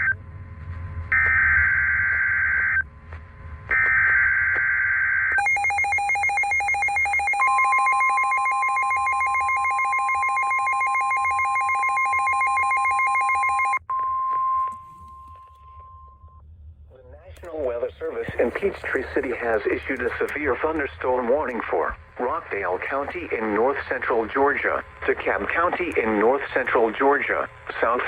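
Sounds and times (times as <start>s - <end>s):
steady electronic alert tone: 5.4s - 13.8s.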